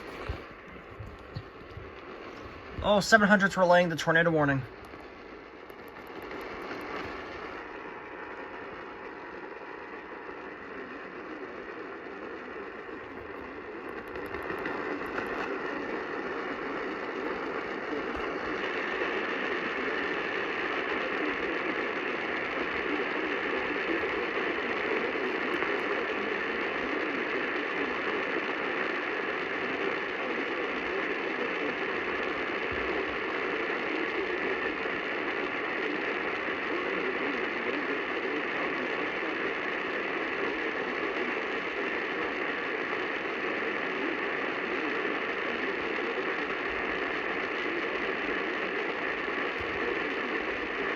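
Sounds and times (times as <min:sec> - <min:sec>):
radio static and hiss: 0:00.0 - 0:50.9
weak radio broadcast signal: 0:00.0 - 0:50.9.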